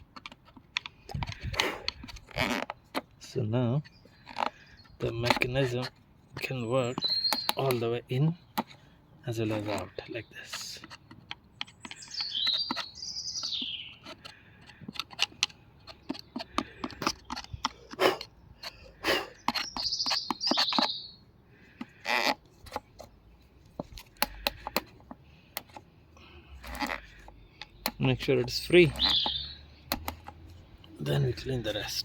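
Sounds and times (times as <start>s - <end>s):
clicks and knocks of handled parts: 0.0s - 7.9s, 9.4s - 21.0s, 21.6s - 31.8s
bird chirping: 3.8s - 5.7s, 6.4s - 10.8s, 11.4s - 14.7s, 15.8s - 21.7s, 27.0s - 32.0s.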